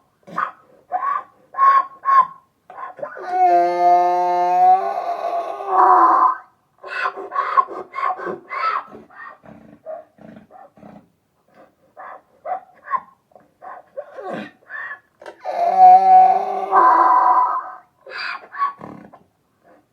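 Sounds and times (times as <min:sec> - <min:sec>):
donkey braying: 0:00.4 - 0:10.0, 0:14.1 - 0:19.2.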